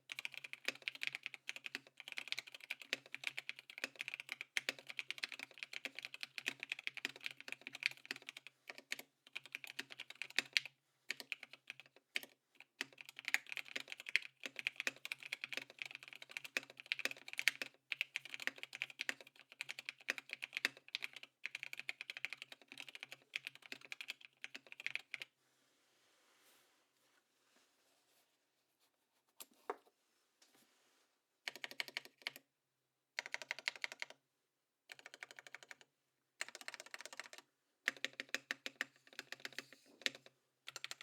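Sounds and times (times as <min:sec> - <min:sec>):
fast typing on mechanical keyboard: 0:00.1 - 0:25.3, 0:31.5 - 0:32.4, 0:33.2 - 0:34.2, 0:34.9 - 0:41.0.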